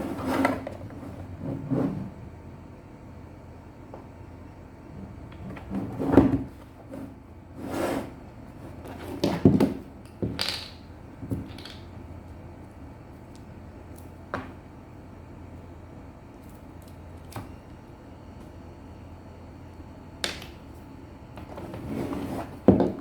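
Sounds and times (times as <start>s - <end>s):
sliding rustle: 21.5s - 22.7s.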